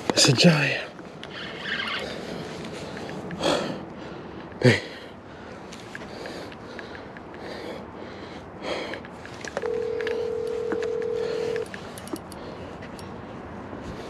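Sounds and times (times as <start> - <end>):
handling rustling and clicks: 8.9 - 13.2
phone ringback tone: 9.6 - 11.7.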